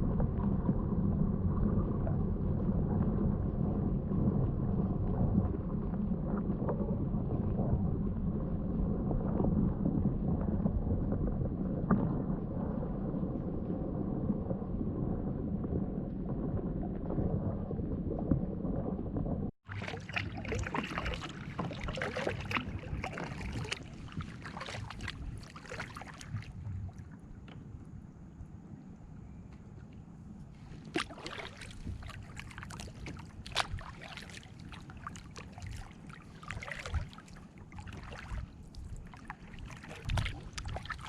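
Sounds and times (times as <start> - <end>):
low steady rumbling: 0.0 - 41.0
paddle splashing water: 19.6 - 27.7, 29.7 - 41.0.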